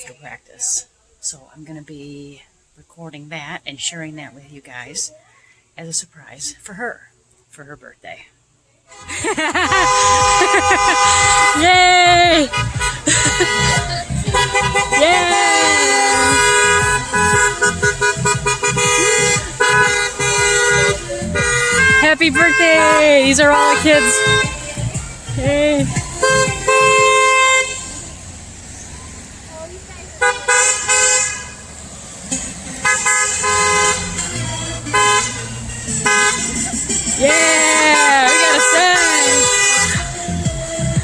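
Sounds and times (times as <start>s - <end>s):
car horns honking: 8.9s - 41.0s
cars driving by: 8.9s - 41.0s
person cheering: 9.6s - 17.6s, 37.1s - 39.5s.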